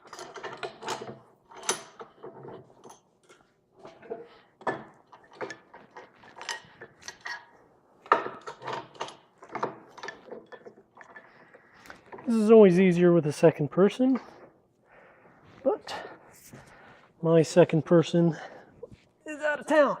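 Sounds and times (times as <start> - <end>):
metallic clinks and clatter: 0.0 - 12.2.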